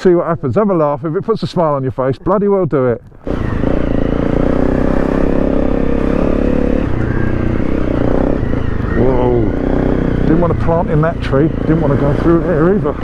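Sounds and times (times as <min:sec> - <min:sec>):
motorcycle engine under load: 0:03.0 - 0:13.0.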